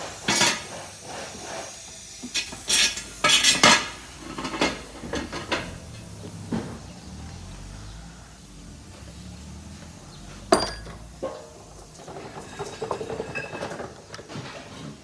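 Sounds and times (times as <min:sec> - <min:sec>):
metallic clinks and rattles: 0:10.5 - 0:11.2.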